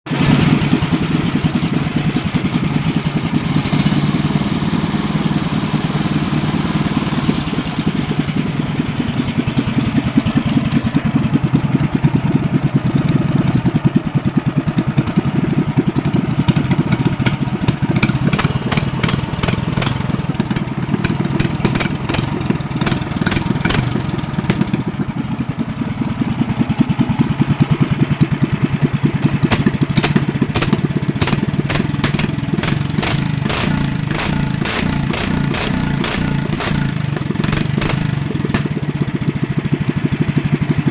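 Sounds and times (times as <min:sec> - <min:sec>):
small engine idling: 0:00.1 - 0:40.9
sharp ticks: 0:29.5 - 0:38.7.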